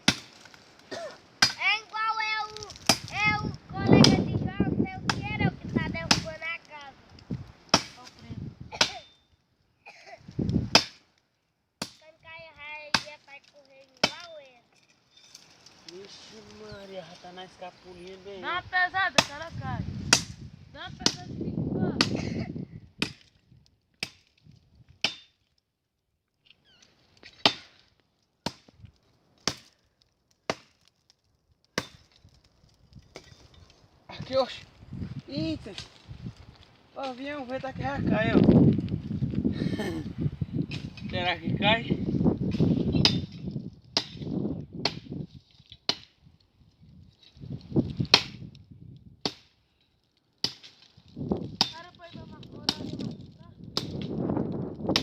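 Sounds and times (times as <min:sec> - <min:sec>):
axe chopping wood: 0:00.0 - 0:00.4, 0:01.4 - 0:01.7, 0:02.8 - 0:03.2, 0:06.1 - 0:06.3, 0:07.7 - 0:08.0, 0:08.7 - 0:09.1, 0:10.7 - 0:11.0, 0:11.8 - 0:12.0, 0:14.0 - 0:14.3, 0:20.1 - 0:20.4, 0:22.0 - 0:22.2, 0:23.0 - 0:23.3, 0:24.0 - 0:24.3, 0:25.0 - 0:25.3, 0:27.3 - 0:27.7, 0:28.4 - 0:28.8, 0:29.4 - 0:29.8, 0:30.5 - 0:30.8, 0:31.8 - 0:32.1, 0:44.0 - 0:45.2, 0:45.8 - 0:46.2, 0:48.0 - 0:48.4, 0:49.2 - 0:49.5, 0:50.4 - 0:50.8, 0:51.5 - 0:51.8, 0:53.8 - 0:54.2
blade chopping into tree trunk: 0:02.8 - 0:03.2, 0:07.7 - 0:08.0, 0:10.7 - 0:11.0, 0:44.0 - 0:45.1, 0:48.0 - 0:48.4.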